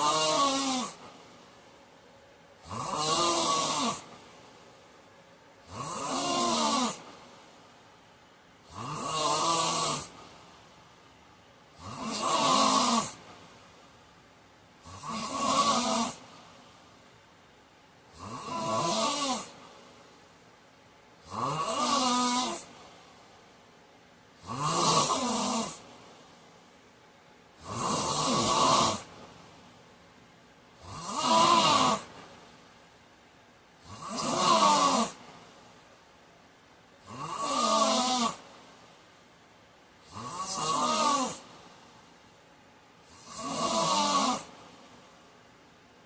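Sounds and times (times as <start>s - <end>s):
man snoring loudly: 0.0s - 1.0s, 2.6s - 4.1s, 5.6s - 7.1s, 8.6s - 10.2s, 11.8s - 13.3s, 14.8s - 16.3s, 18.1s - 19.6s, 21.2s - 22.7s, 24.4s - 25.8s, 27.6s - 29.2s, 30.8s - 32.1s, 33.8s - 35.2s, 37.0s - 38.4s, 40.0s - 41.5s, 43.0s - 44.5s.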